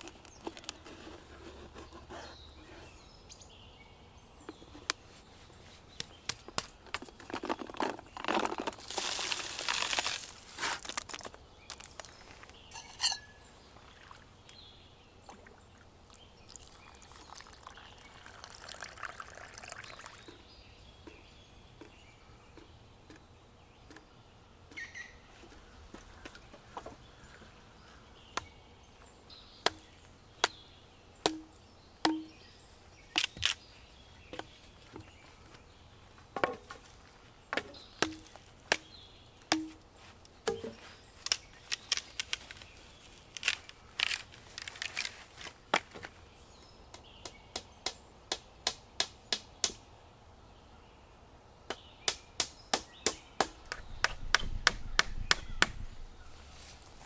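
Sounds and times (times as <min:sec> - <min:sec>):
blade chopping wood: 0:31.2 - 0:32.4, 0:37.6 - 0:38.9, 0:39.5 - 0:39.8.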